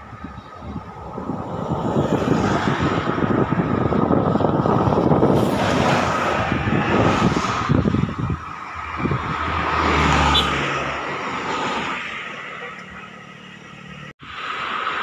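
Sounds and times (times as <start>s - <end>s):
bus passing close by: 0.0s - 15.0s.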